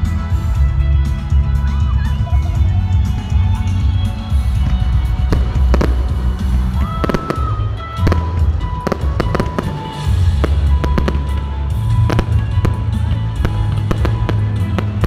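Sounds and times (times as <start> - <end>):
loud music with heavy bass: 0.0 - 15.0
fireworks bursting: 3.8 - 15.0.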